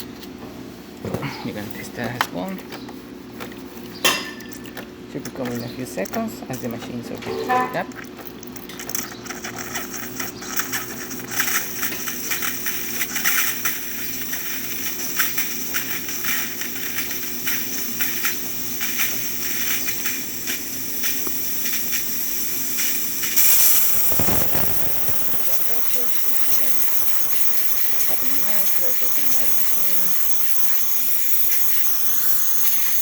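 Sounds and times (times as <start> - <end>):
steam hissing with spitting crackles: 8.7 - 33.0
espresso machine humming: 9.0 - 33.0.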